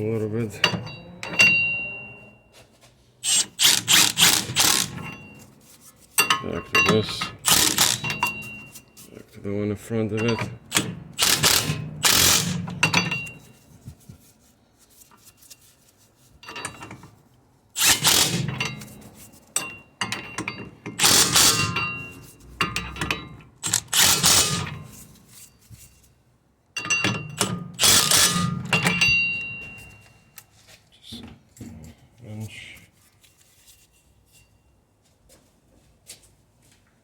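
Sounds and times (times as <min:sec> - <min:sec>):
ratchet wrench on bolts: 0:03.2 - 0:08.9, 0:10.2 - 0:13.6, 0:17.8 - 0:25.5, 0:26.8 - 0:29.5.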